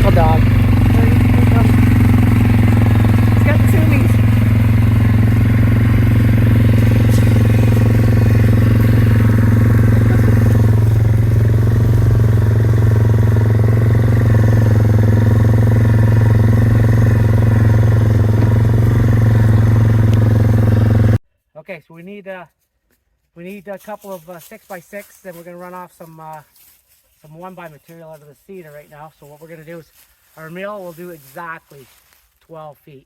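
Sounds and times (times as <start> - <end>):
tractor diesel engine running: 0.0 - 21.2.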